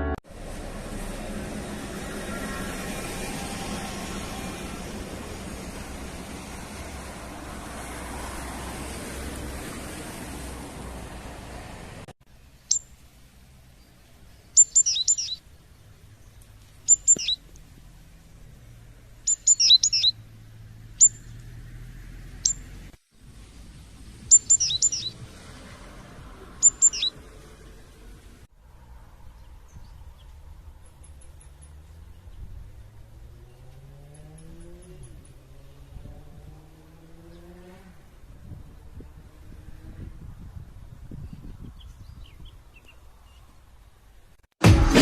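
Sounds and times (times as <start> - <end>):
small songbird chirping: 12.4 - 17.9, 19.1 - 21.6, 22.4 - 22.7, 24.2 - 25.2, 26.6 - 27.2, 41.1 - 43.6.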